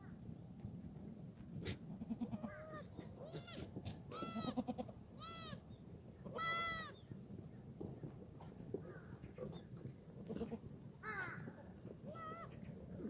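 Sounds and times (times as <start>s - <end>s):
goats bleating: 2.0s - 5.6s.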